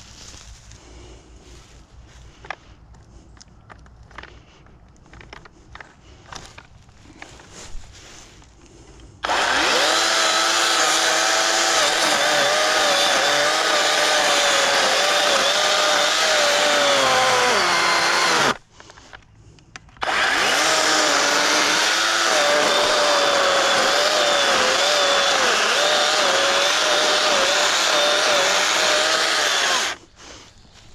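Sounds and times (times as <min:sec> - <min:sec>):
electric chainsaw cutting wood: 0:09.2 - 0:18.6, 0:20.0 - 0:30.0.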